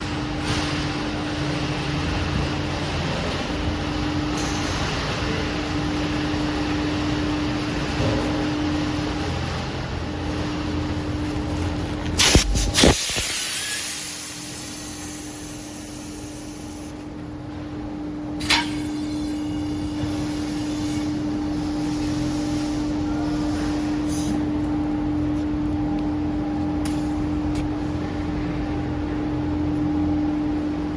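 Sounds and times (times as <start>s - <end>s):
air hissing: 12.2s - 17.0s.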